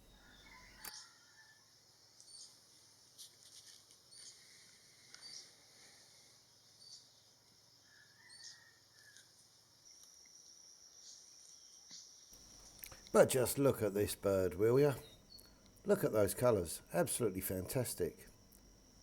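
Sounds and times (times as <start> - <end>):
small bird chirping: 0.0 - 1.2, 2.0 - 2.9, 4.1 - 13.1, 14.8 - 15.9.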